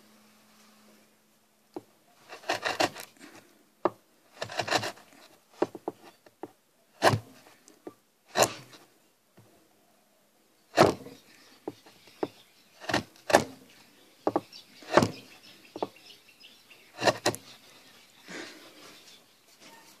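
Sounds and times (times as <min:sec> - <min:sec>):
chisel knocks: 0:01.8 - 0:03.1, 0:05.6 - 0:08.6, 0:10.8 - 0:13.6, 0:14.2 - 0:16.0, 0:17.0 - 0:17.4
chisel scraping wood: 0:01.8 - 0:08.9, 0:10.7 - 0:16.2, 0:16.9 - 0:17.8.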